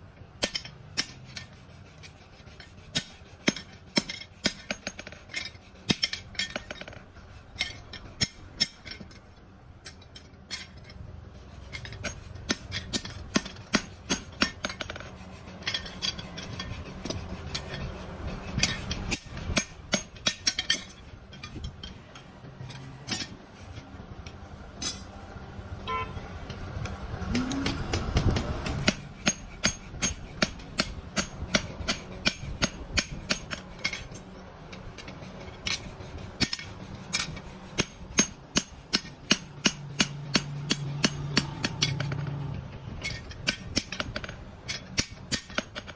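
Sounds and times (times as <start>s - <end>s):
hammer striking steel: 0.4s - 1.5s, 2.9s - 7.0s, 7.6s - 9.1s, 11.8s - 17.8s, 18.6s - 22.0s, 24.8s - 25.2s, 27.5s - 34.2s, 35.7s - 45.9s.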